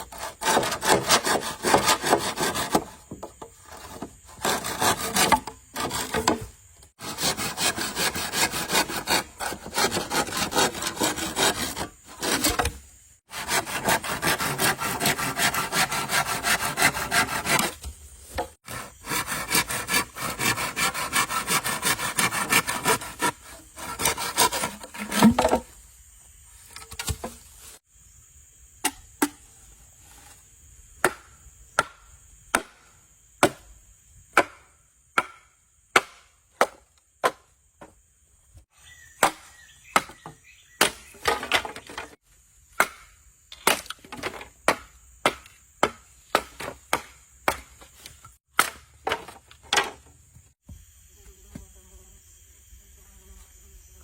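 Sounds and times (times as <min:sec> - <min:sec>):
hand saw cutting wood: 0:00.0 - 0:25.7.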